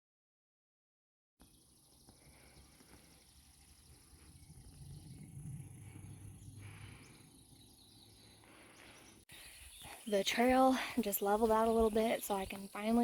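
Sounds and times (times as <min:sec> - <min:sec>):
low rumble: 0:03.5 - 0:08.7.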